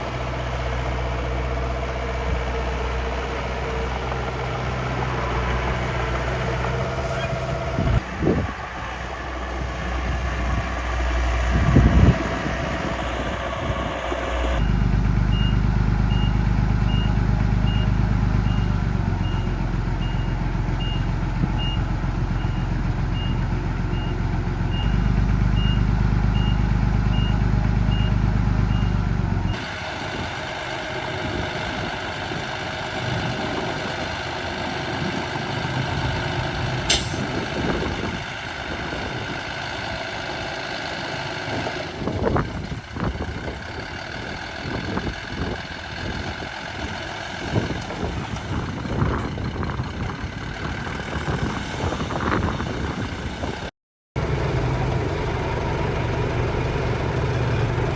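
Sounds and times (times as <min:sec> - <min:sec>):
small truck engine running: 0:00.0 - 0:57.9
sharp click: 0:36.9 - 0:37.2.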